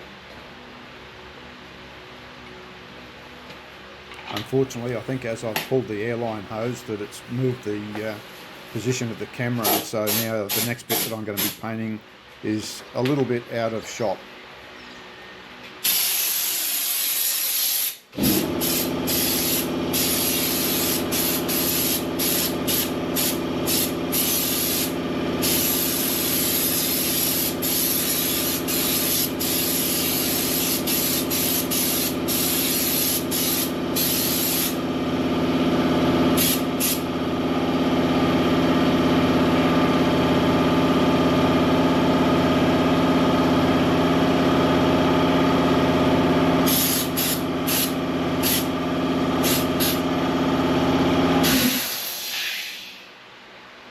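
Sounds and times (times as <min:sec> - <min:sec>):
air compressor humming: 0:04.1 - 0:12.0, 0:15.7 - 0:53.2
spray gun hissing: 0:09.6 - 0:11.6, 0:15.8 - 0:34.8, 0:36.4 - 0:37.1, 0:46.6 - 0:48.7, 0:49.4 - 0:50.0, 0:51.4 - 0:53.0.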